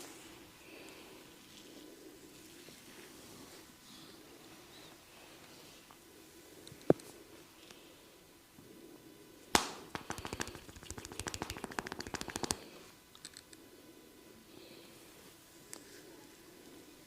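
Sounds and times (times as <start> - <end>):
hands cracking: 9.5 - 12.6
fast percussive hand tapping: 9.6 - 12.6.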